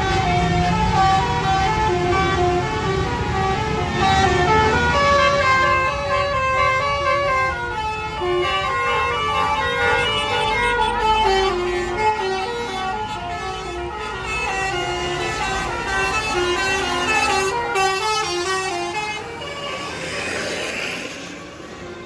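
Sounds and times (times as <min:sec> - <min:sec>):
musical bus horn melody: 0:00.0 - 0:20.6
rushing noise: 0:18.7 - 0:22.0.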